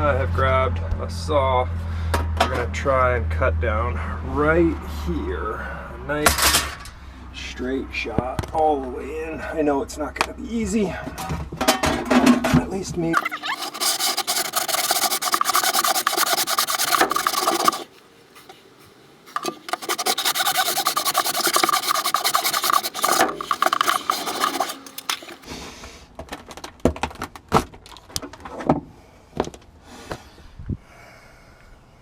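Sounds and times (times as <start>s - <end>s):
saw cutting plywood: 13.2s - 25.5s.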